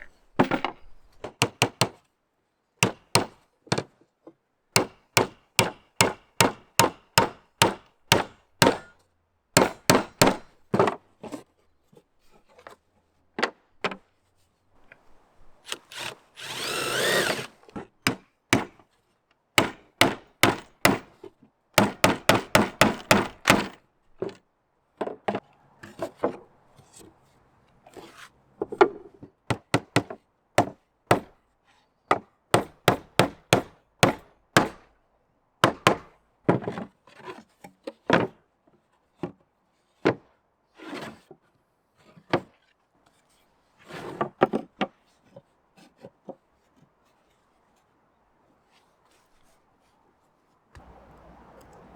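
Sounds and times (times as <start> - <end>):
hammer striking nails into wood: 0.4 - 2.0, 2.8 - 3.8, 4.8 - 8.9, 9.6 - 10.5, 15.7 - 18.8, 19.6 - 21.2, 21.8 - 23.8, 29.5 - 31.3, 32.1 - 34.8, 35.6 - 36.1
short rasping saw stroke: 15.7 - 17.6.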